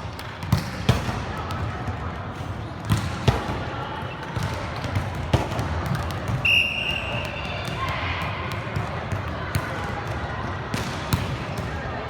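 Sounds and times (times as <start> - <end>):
faint voices of players: 0.9 - 12.0.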